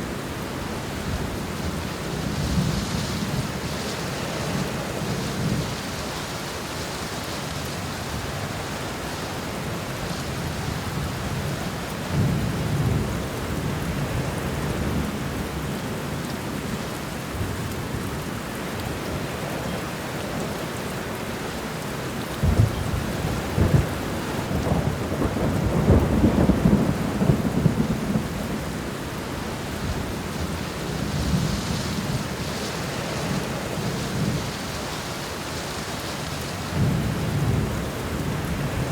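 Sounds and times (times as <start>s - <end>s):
steady rain falling: 0.0s - 38.9s
rolling thunder: 22.4s - 28.8s.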